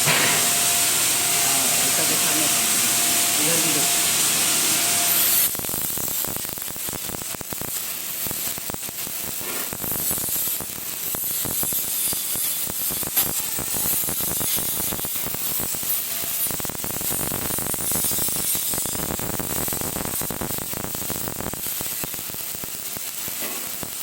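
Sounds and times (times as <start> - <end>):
welding arc pop: 0.0 - 0.6, 5.4 - 24.0
welding arc crackling: 0.0 - 24.0.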